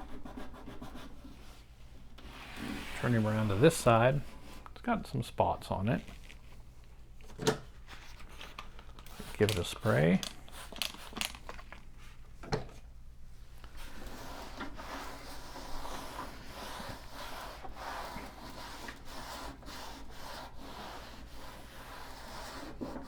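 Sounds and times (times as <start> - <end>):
cloth rubbing on computer case: 2.2 - 4.6.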